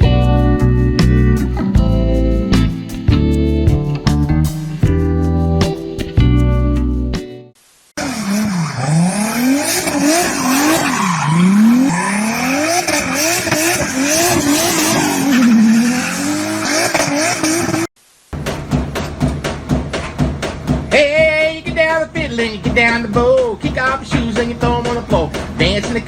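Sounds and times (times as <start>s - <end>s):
tyre squeal: 8.0s - 17.8s
car engine revving: 8.0s - 20.9s.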